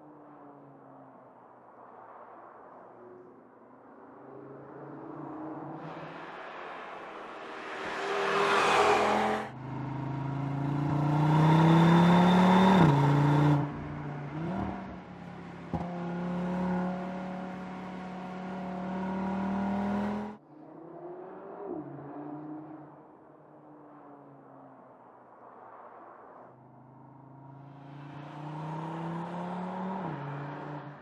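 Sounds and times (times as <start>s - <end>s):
car engine accelerating: 5.8s - 20.4s.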